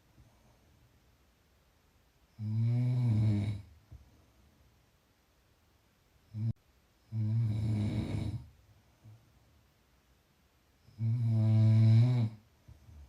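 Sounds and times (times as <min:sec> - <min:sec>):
snoring: 0:02.4 - 0:03.7, 0:06.3 - 0:08.5, 0:10.9 - 0:12.4.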